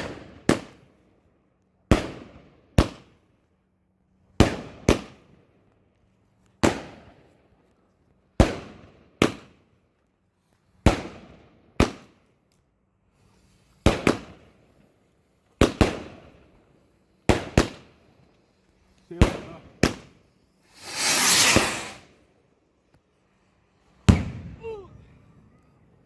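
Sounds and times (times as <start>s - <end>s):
fireworks bangs with echo: 20.8s - 22.0s.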